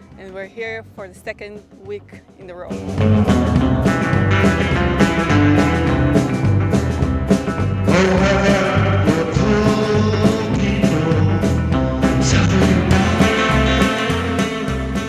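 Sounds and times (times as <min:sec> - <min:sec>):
rock music: 0:00.0 - 0:15.0
steady drum beat: 0:00.0 - 0:15.0
person singing: 0:07.8 - 0:14.5.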